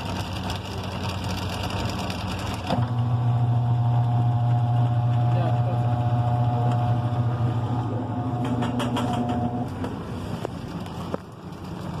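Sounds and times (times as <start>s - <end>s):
washing machine spinning hum: 0.0s - 12.0s
washing machine clicks: 8.3s - 9.7s.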